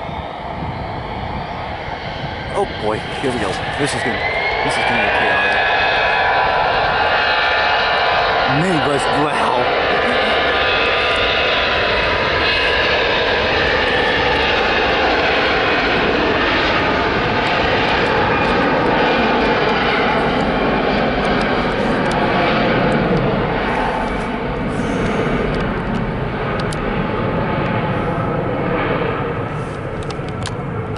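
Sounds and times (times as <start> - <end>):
jet airliner passing: 0.0 - 30.9.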